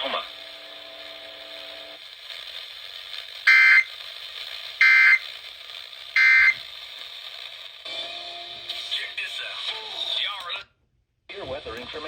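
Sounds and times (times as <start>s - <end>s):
faint receiver static: 0.0s - 7.8s
buzzy digital data bursts: 3.4s - 4.0s, 4.8s - 6.7s.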